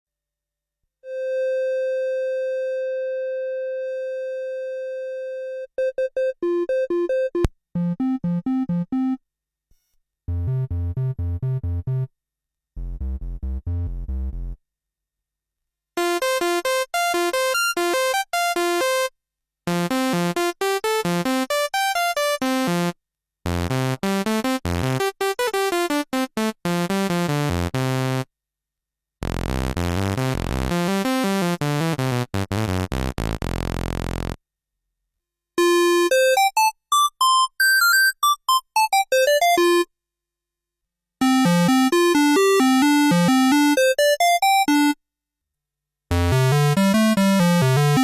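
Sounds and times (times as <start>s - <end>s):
buzzy synth bass notes: 10.3s - 12.1s, 12.8s - 14.6s, 29.2s - 34.4s.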